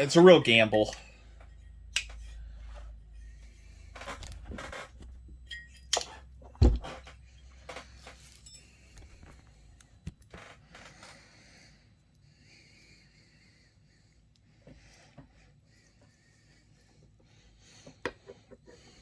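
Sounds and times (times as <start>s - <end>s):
metal tools clinking: 5.4s - 6.2s, 7.8s - 9.0s.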